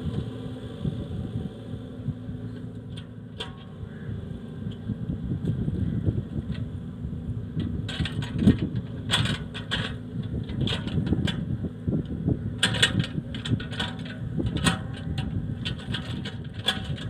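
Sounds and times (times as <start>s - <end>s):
excavator diesel engine running: 0.0s - 17.0s
sharp metal knocks and clanks: 2.9s - 3.8s, 7.6s - 11.5s, 12.6s - 17.0s.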